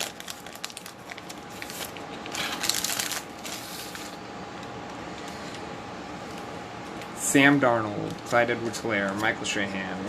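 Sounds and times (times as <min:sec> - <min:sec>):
plastic wrapper crinkling: 0:00.0 - 0:04.2.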